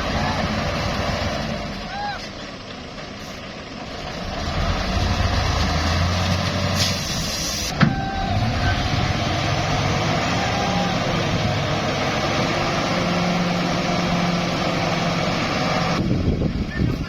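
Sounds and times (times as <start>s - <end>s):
truck diesel engine running: 0.0s - 17.0s
short hiss: 6.8s - 7.8s.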